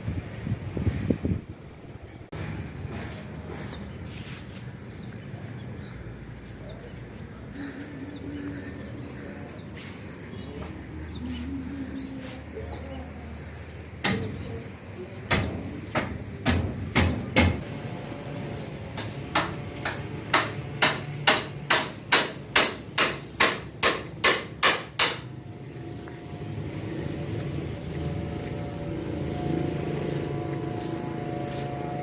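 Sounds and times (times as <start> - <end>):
hammer blows: 18.9 - 25.4.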